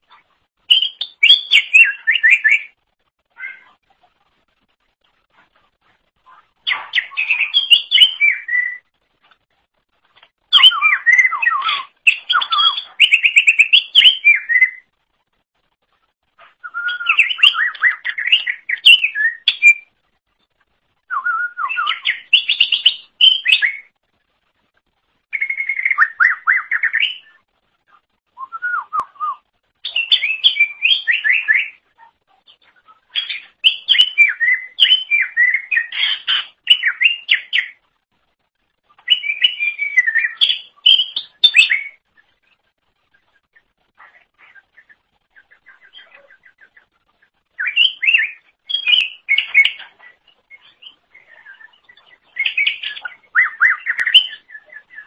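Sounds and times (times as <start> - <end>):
bird singing whistled notes: 0.7 - 2.8, 6.6 - 8.9, 10.5 - 14.9, 16.5 - 20.0, 21.0 - 23.9, 25.3 - 27.4, 28.3 - 31.8, 32.6 - 37.8, 38.9 - 42.3, 47.6 - 55.0.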